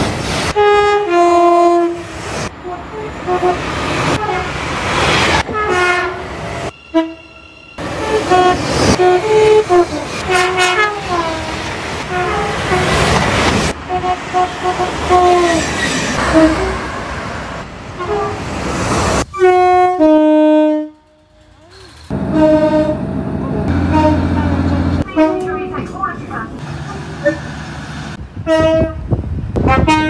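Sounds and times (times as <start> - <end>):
moving train noise: 0.0 - 30.0
train horn tooting: 0.5 - 4.5, 5.4 - 6.2, 6.8 - 11.5, 12.1 - 13.0, 13.9 - 15.6, 16.2 - 16.8, 19.3 - 21.2, 22.1 - 25.9, 28.4 - 29.0, 29.6 - 30.0.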